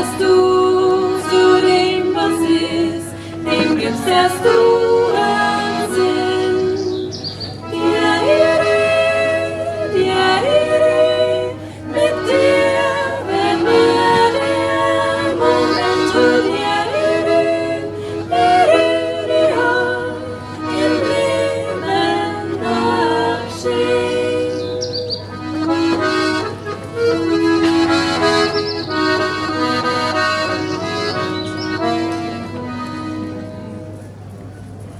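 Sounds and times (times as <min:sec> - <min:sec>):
accordion music: 0:00.0 - 0:34.5.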